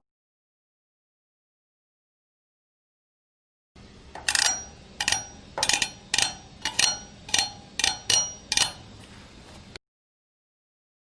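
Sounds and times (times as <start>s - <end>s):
sharp ringing clinks: 4.3s - 8.8s.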